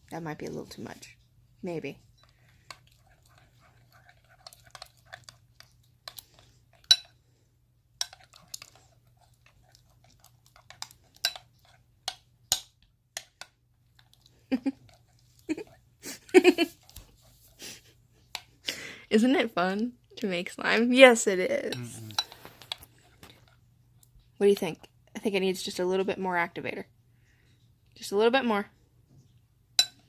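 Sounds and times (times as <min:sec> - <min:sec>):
spoon stirring sticky slime: 0:01.9 - 0:18.6, 0:20.2 - 0:24.7.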